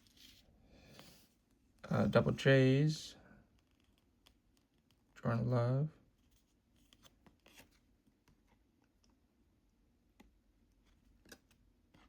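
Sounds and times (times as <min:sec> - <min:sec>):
cards flipped by hand: 0:06.4 - 0:08.6.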